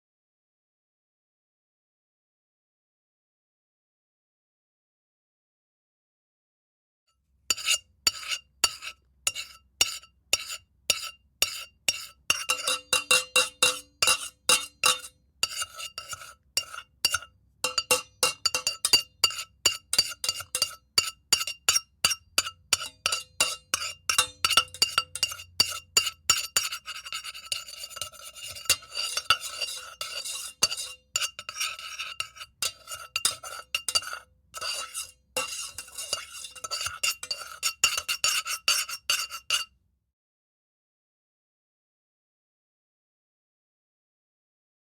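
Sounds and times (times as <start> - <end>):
metal pot being scraped: 7.5 - 39.7
pot ringing: 12.5 - 15.1, 17.1 - 19.4.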